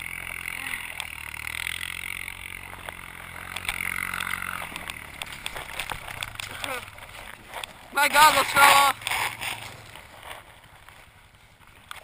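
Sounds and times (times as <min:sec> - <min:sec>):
atv engine running: 0:00.0 - 0:12.0
scraping noise: 0:08.2 - 0:10.5.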